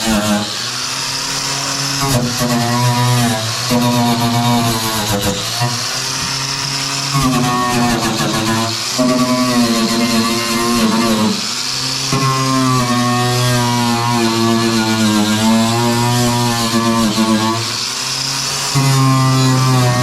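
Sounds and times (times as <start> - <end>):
power tool motor whining: 0.0 - 20.0.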